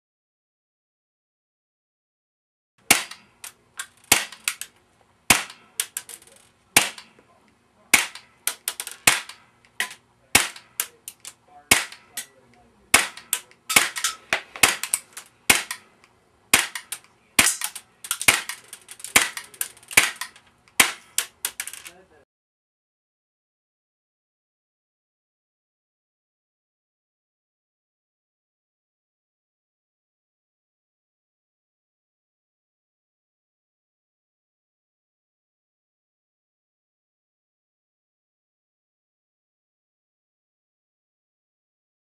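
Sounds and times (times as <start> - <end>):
sharp loud cracks: 2.8 - 7.2, 7.9 - 21.9.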